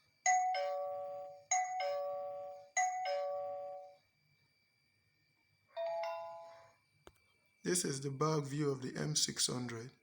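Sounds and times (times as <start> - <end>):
electronic doorbell ding-dong: 0.2 - 4.0.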